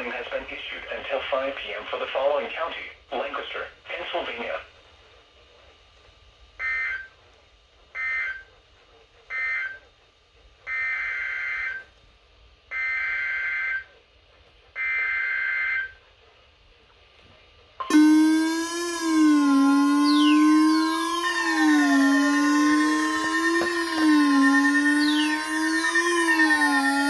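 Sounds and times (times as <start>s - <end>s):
buzzy data burst screeches: 17.9s - 27.0s
longer data bursts: 17.9s - 27.0s
loud sweeping alert tone: 17.9s - 27.0s.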